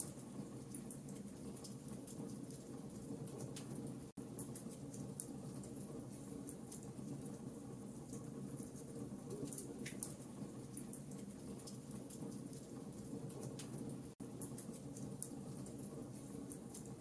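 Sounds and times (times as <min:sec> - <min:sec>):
fire crackling in a fireplace: 0:00.0 - 0:17.0.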